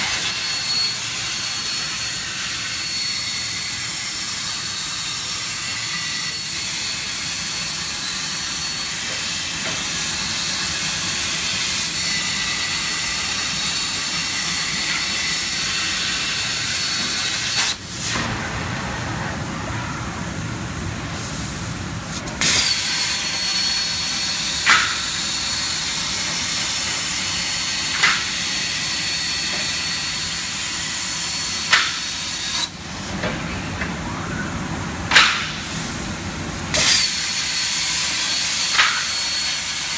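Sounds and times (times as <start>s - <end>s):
plasma cutter arc hissing: 0.0s - 18.4s, 21.2s - 32.8s, 35.2s - 39.9s.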